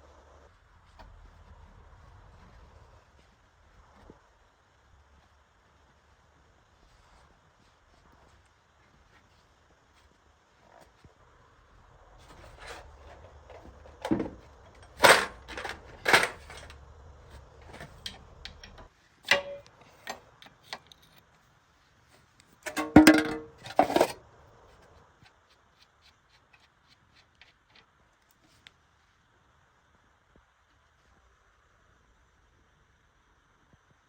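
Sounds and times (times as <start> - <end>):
metal tools clinking: 12.3 - 16.8, 17.6 - 20.2, 22.7 - 24.2.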